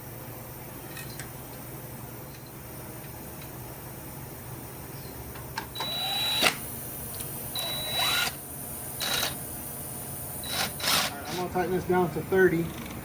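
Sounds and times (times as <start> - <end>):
power driver whining: 5.7 - 12.2.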